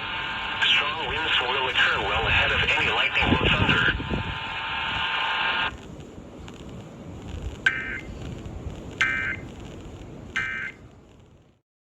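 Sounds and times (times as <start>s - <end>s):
broadcast hiss: 0.0s - 11.6s
data bursts: 2.6s - 10.8s.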